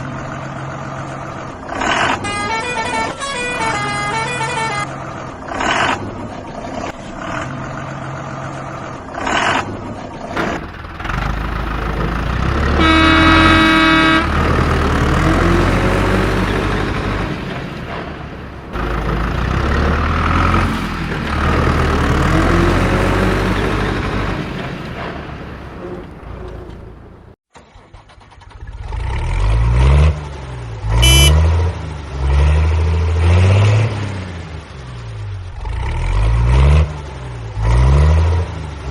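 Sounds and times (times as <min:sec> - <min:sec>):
vehicle engines running: 0:00.0 - 0:38.9
vehicle horn blast: 0:02.2 - 0:05.1, 0:12.7 - 0:14.8, 0:31.0 - 0:31.4.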